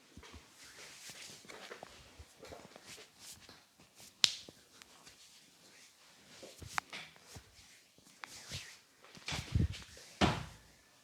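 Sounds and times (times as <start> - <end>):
soft rustling of hair: 0.0 - 11.0.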